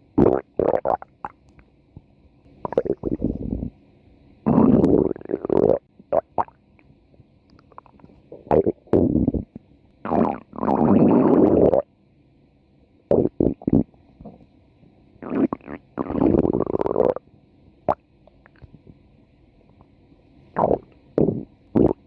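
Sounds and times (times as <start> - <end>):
stomach growling: 0.2 - 1.4, 2.6 - 3.7, 4.5 - 6.6, 7.6 - 11.9, 13.1 - 14.5, 15.2 - 17.2, 17.9 - 18.9, 20.6 - 22.0.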